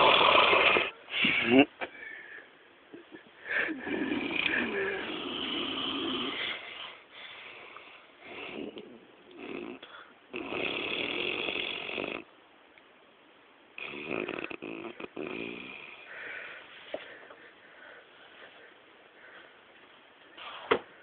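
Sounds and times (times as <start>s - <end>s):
man snoring heavily: 0.0s - 1.0s, 3.7s - 6.6s, 8.2s - 12.3s, 13.8s - 16.1s.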